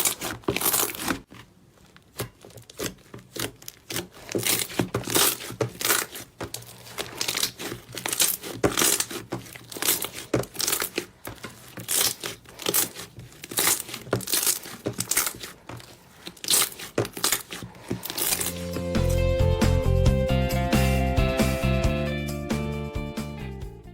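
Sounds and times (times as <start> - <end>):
slime crackling and popping: 0.0 - 1.4, 2.0 - 18.6.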